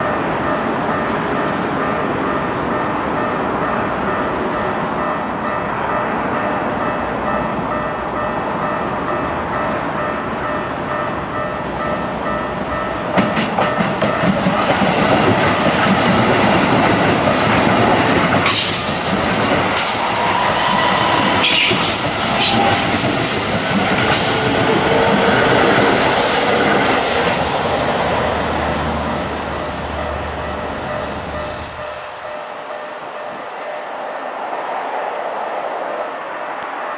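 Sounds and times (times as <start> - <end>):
level crossing warning bell: 0.0 - 15.6, 28.6 - 34.0
train wheels clattering over rail joints: 13.1 - 27.4.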